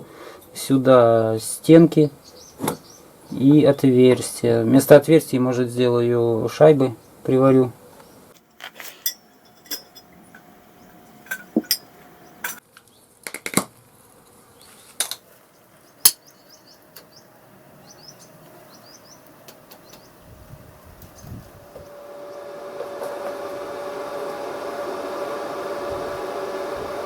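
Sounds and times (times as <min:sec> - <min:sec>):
small bird chirping: 0:02.2 - 0:03.5, 0:15.5 - 0:20.3
steel parts clinking: 0:08.5 - 0:12.6.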